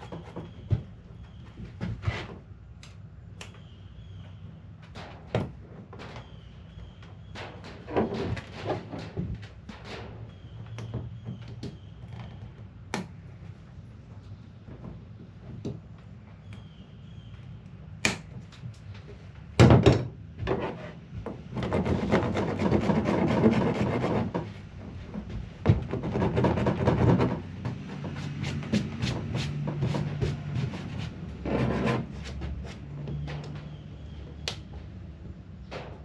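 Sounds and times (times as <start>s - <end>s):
rasp scraping plastic: 7.4s - 11.2s, 20.4s - 24.6s, 25.7s - 34.0s.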